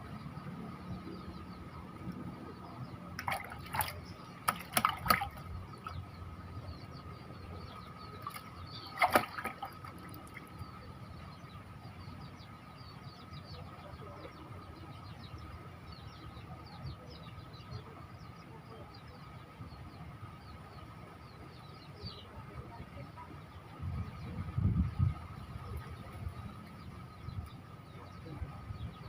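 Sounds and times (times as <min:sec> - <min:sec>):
water splashes: 0:03.1 - 0:06.2, 0:08.0 - 0:10.8.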